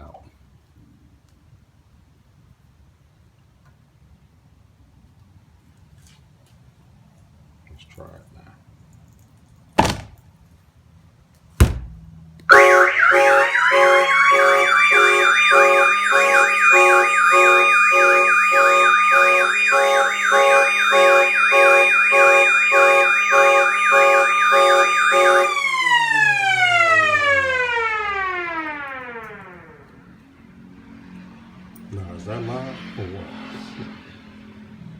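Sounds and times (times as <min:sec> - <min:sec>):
car horn blasts: 0:12.5 - 0:25.7
car alarm siren wailing: 0:12.5 - 0:30.2.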